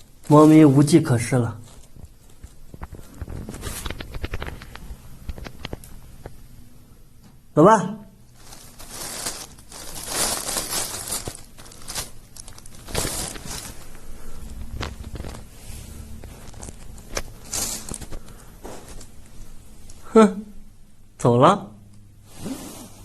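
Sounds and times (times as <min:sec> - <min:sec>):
plastic bag crinkling: 0:00.0 - 0:05.8, 0:08.3 - 0:20.0.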